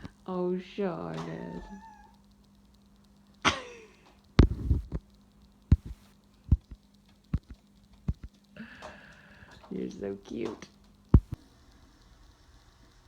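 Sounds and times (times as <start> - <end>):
steady low hum: 0.0 - 13.0
heavy thump: 4.4 - 4.9
light knocks and taps: 4.4 - 5.0, 5.7 - 8.4, 11.2 - 11.4.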